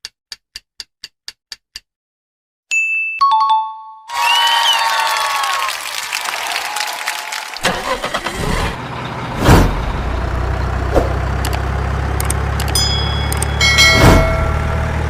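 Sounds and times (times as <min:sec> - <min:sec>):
vehicle engine starting and idling: 0:07.6 - 0:15.0
loud whoosh: 0:08.3 - 0:10.2, 0:10.9 - 0:11.3, 0:13.8 - 0:14.9
high chiming tones: 0:12.8 - 0:15.0.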